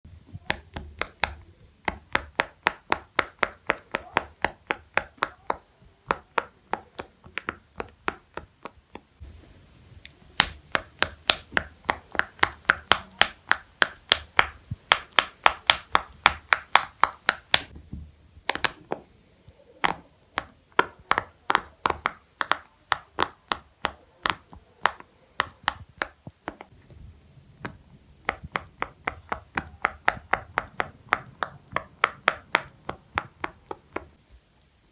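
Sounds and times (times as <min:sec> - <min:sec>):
fidget toy bubbles popping: 0:10.0 - 0:17.8, 0:18.4 - 0:19.1, 0:27.6 - 0:34.2.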